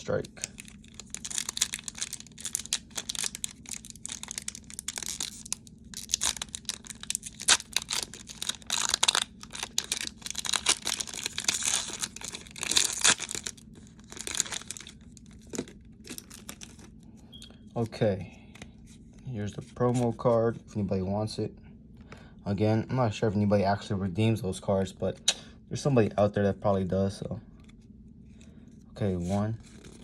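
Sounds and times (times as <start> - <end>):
foil wrapper tearing and crinkling: 0.1 - 16.9, 29.6 - 30.0.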